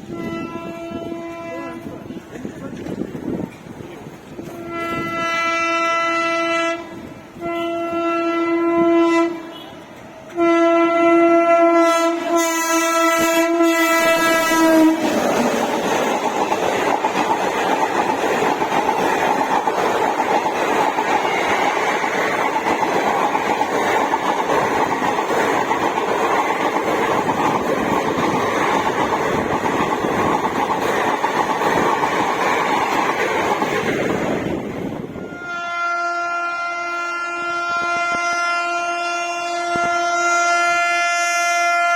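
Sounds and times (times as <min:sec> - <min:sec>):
train horn blasts: 0:00.0 - 0:02.2, 0:04.4 - 0:15.2, 0:35.1 - 0:41.9
train passing with rumble: 0:00.0 - 0:41.9
wheels clattering over rail joints: 0:15.0 - 0:34.7.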